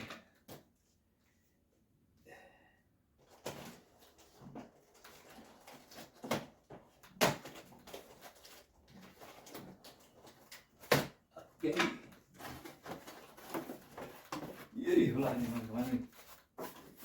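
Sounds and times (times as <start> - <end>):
box knocks and clatters: 5.7 - 8.2.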